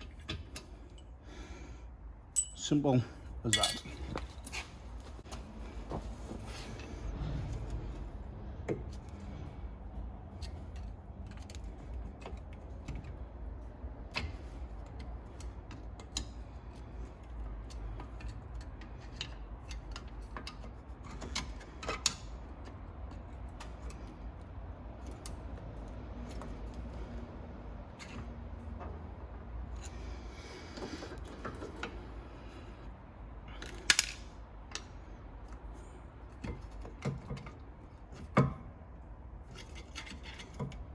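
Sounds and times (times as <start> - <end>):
hand tools clinking on brake parts: 2.4 - 2.8, 3.5 - 4.3.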